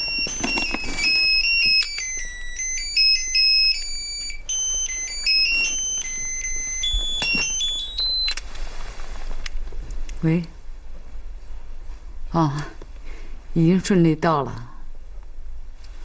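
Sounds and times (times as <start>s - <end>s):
mobile phone electronic ringtone: 0.0s - 8.4s.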